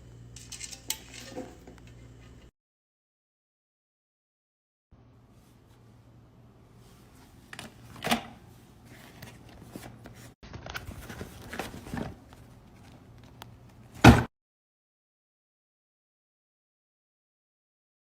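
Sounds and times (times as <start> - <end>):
rustling and clicking handling noises: 8.9 - 14.0.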